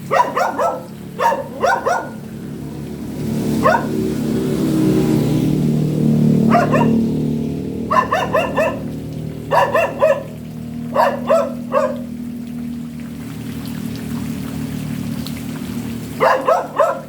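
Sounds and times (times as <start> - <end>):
dog barking: 0.0 - 2.3, 3.5 - 4.0, 6.4 - 7.1, 7.9 - 12.1, 16.2 - 17.0.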